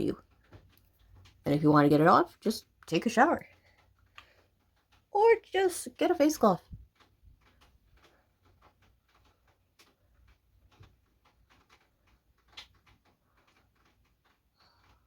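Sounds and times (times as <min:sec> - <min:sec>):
faint taps and clicks: 0:00.0 - 0:15.0.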